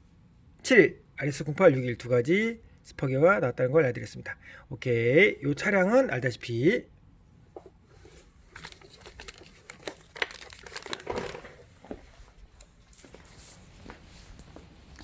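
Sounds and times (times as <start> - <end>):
faint crinkling and rustling: 7.5 - 15.0.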